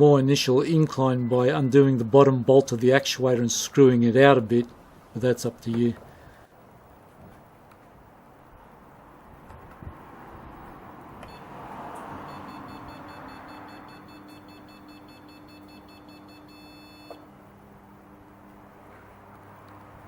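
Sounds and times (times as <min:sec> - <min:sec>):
treadmill console beeping: 0:11.2 - 0:11.5, 0:12.2 - 0:17.3.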